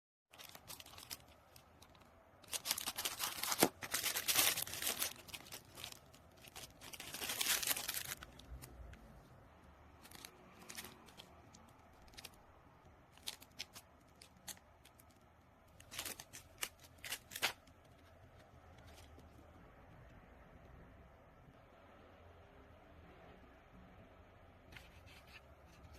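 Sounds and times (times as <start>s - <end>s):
packaging crinkling: 0.3s - 8.7s, 10.0s - 12.4s, 13.1s - 15.2s, 15.8s - 18.1s.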